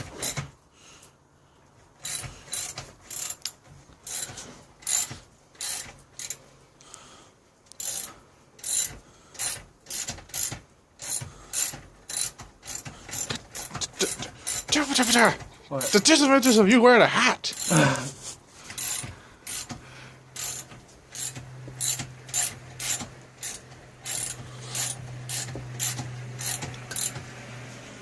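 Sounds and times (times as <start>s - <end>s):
ratchet wrench clicking: 2.0s - 6.4s, 7.7s - 15.2s, 15.8s - 16.1s, 17.5s - 17.8s, 18.7s - 27.2s.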